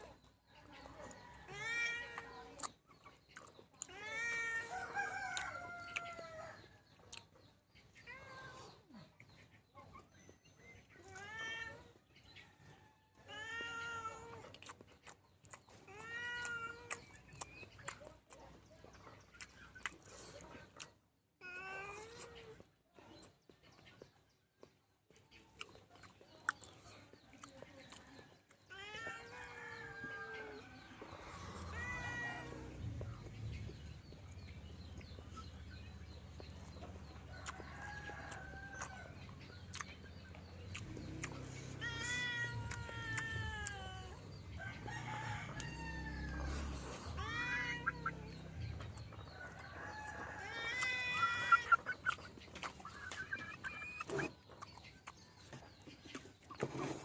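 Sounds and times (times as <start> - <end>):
animal calling: 28.7 - 49.2.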